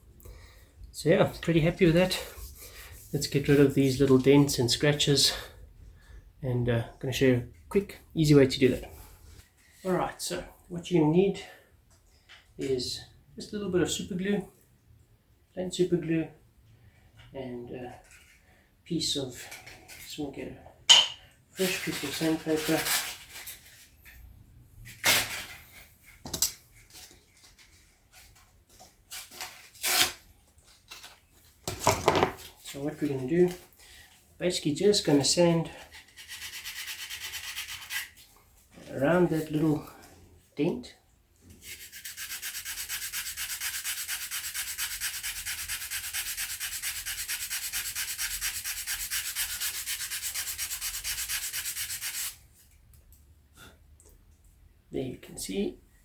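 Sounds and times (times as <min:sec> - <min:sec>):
objects knocking when set down: 0:31.6 - 0:32.4
sandpaper rubbing on wood: 0:35.9 - 0:38.2, 0:41.6 - 0:52.4.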